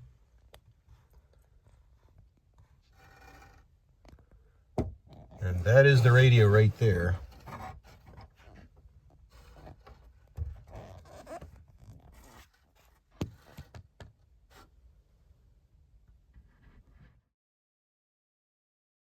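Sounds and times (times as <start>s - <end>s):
rustling and scraping on plastic: 5.6s - 14.7s.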